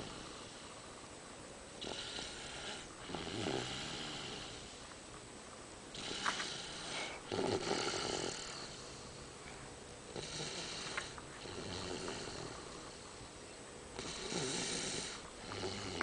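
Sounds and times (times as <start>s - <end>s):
toddler snoring: 0.0s - 0.6s, 1.8s - 4.7s, 5.9s - 9.2s, 10.1s - 13.2s, 14.0s - 16.0s.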